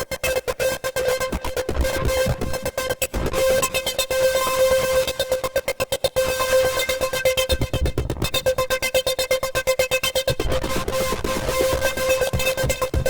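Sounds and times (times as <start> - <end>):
pulsing synthesizer pattern: 10.3 - 13.0.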